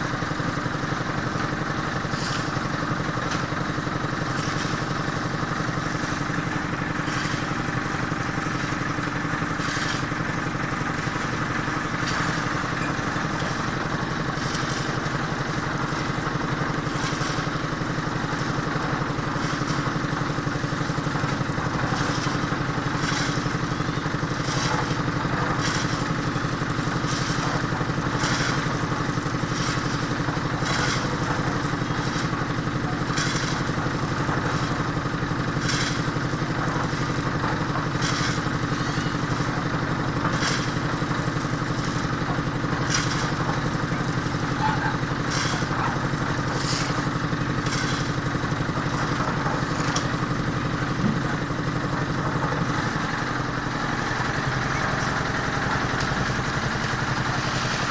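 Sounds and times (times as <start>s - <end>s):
construction machine engine: 0.0s - 57.9s
metal clanks and scrapes: 0.2s - 57.9s.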